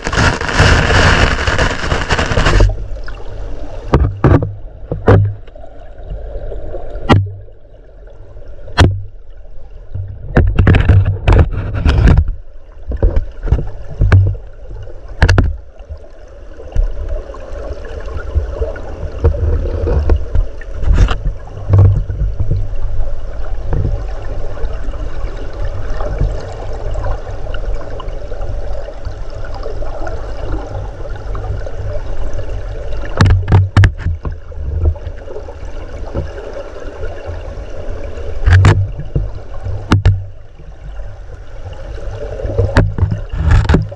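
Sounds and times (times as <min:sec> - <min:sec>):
underwater river current rushing: 0:00.0 - 0:43.9
sharp knocks: 0:03.9 - 0:05.4, 0:08.8 - 0:09.1, 0:33.2 - 0:34.4, 0:38.5 - 0:40.3.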